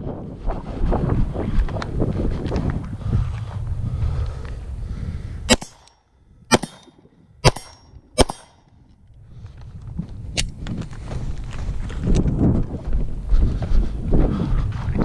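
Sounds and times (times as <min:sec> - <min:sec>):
wind rumbling on microphone: 0:00.0 - 0:05.6, 0:06.2 - 0:15.0
gunshots: 0:05.5 - 0:05.9, 0:06.5 - 0:08.6.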